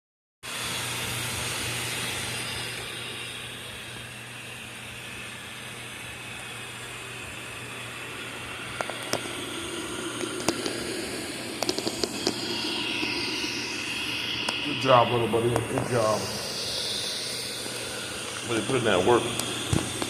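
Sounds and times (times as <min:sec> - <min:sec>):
robot vacuum whirring: 0:00.5 - 0:04.2, 0:07.6 - 0:20.0
sharp clicks and ticks: 0:11.6 - 0:12.4.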